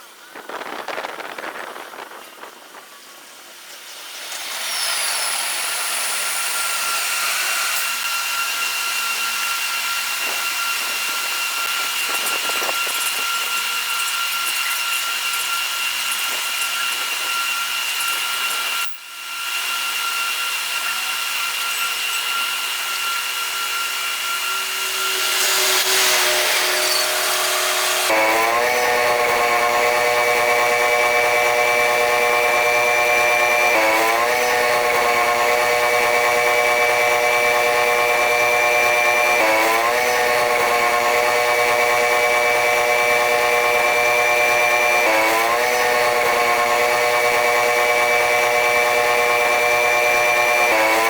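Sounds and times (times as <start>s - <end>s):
thin whining tones: 2.2s - 51.0s
train wheels rushing on rail: 22.9s - 51.0s.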